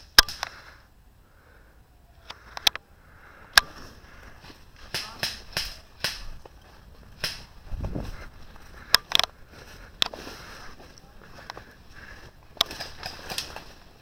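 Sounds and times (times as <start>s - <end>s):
low rumble: 4.2s - 10.0s.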